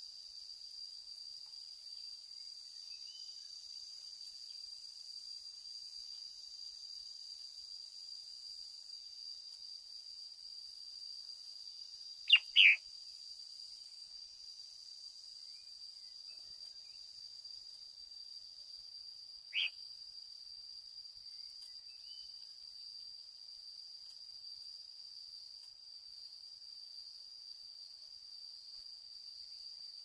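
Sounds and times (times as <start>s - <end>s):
high-pitched cricket drone: 1.7s - 23.5s
bird calls sweeping down: 12.3s - 12.8s.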